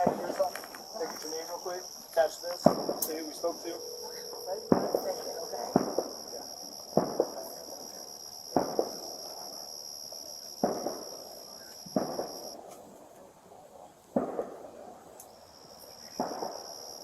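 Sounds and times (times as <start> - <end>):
faint high whine: 0.1 - 12.6
sharp echoing pops: 2.5 - 7.5, 8.5 - 9.0, 11.9 - 12.6.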